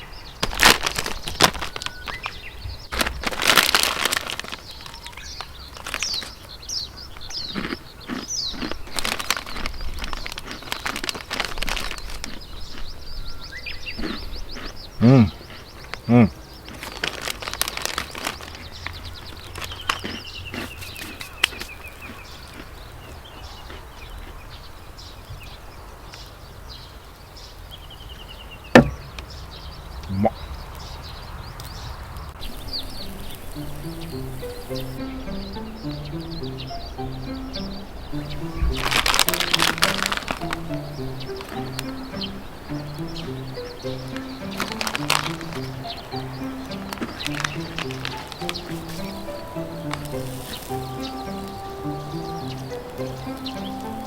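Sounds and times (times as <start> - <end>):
small bird chirping: 0.0 - 54.0
sharp knock: 28.8 - 29.2.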